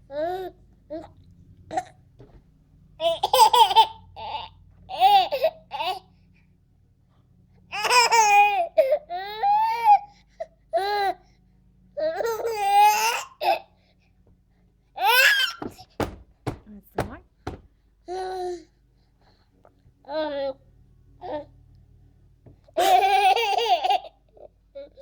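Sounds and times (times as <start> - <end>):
baby laughing and squealing: 15.0 - 15.7.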